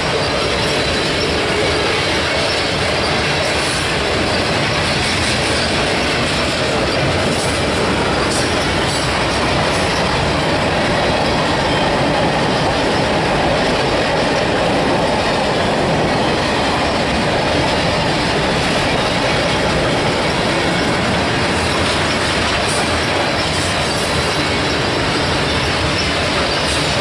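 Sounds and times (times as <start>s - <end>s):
freight train wheels rumbling: 0.0s - 27.0s.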